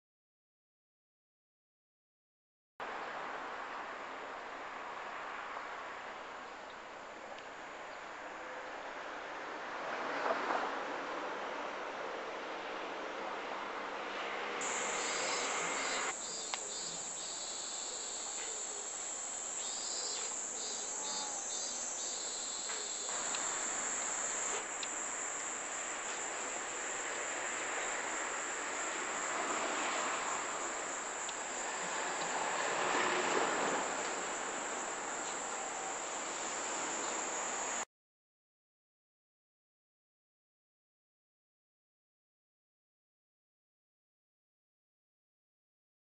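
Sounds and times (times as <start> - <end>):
rapid pulsing insect calls: 14.6 - 37.8
high insect drone: 14.6 - 37.9.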